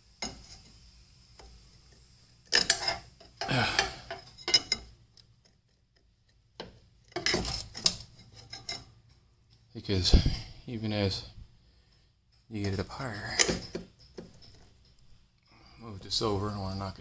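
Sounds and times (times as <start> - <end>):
metal parts clinking and clattering: 2.5 - 4.9, 7.1 - 8.9, 12.6 - 15.0.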